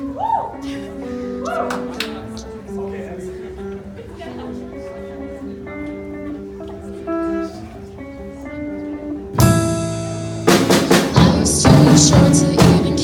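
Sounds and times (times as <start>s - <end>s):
picked guitar notes: 0.0s - 13.0s
drums steady beat: 9.4s - 13.0s.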